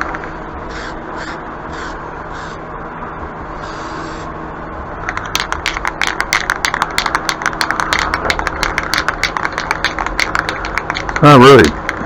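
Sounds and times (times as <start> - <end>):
spray can ball rattling: 5.1 - 12.0.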